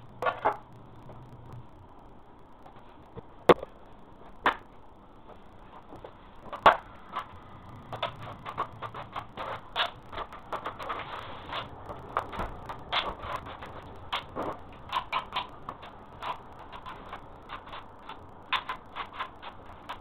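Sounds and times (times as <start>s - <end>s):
sharp knocks and clicks: 5.9s - 20.0s.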